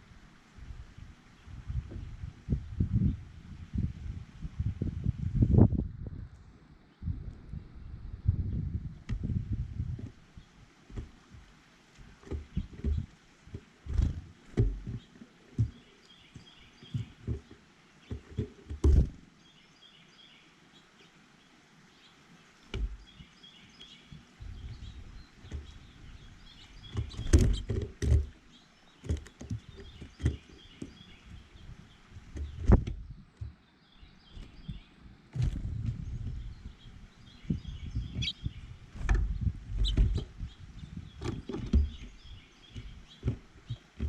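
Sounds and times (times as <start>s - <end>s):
low thumps and knocks: 1.7s - 3.1s, 8.3s - 10.3s, 10.9s - 19.3s, 22.7s - 23.2s, 24.1s - 28.4s, 29.0s - 33.6s, 34.3s - 44.0s
faint bird chirps: 35.7s - 43.9s.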